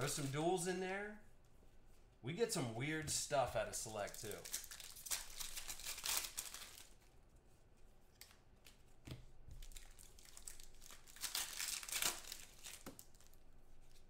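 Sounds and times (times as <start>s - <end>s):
foil wrapper crinkling and tearing: 0.0s - 0.4s, 4.0s - 7.1s, 9.6s - 14.0s.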